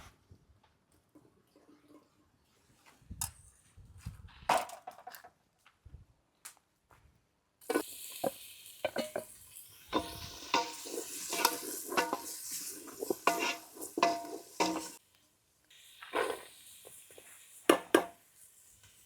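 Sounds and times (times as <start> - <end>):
food sizzling: 7.6 - 19.0
spoon scraping metal pot: 9.9 - 15.0.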